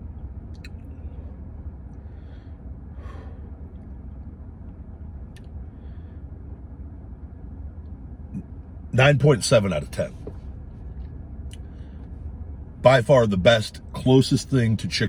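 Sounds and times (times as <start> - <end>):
steady low hum: 0.0 - 15.0
man breathing out: 2.1 - 3.6.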